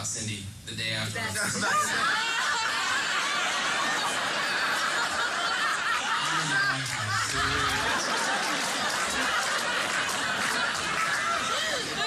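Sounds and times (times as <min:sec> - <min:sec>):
people laughing and chuckling: 0:01.4 - 0:12.0
deeper voice laughing: 0:05.5 - 0:08.1.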